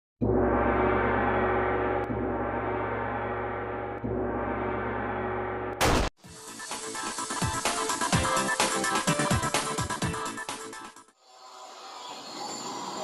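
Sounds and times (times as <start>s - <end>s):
electronic music with a beat: 6.2s - 11.1s.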